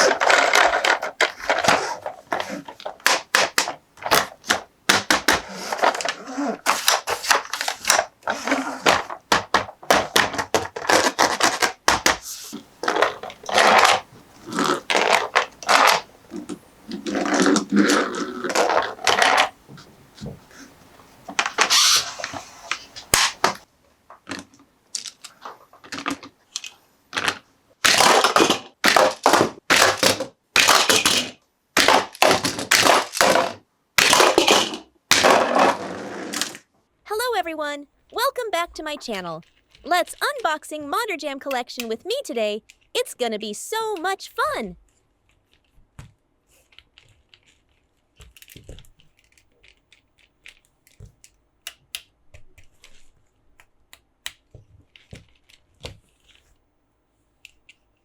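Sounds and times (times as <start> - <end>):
packaging rustling: 0.0 - 23.6
plastic toy pieces clicking: 46.6 - 53.0.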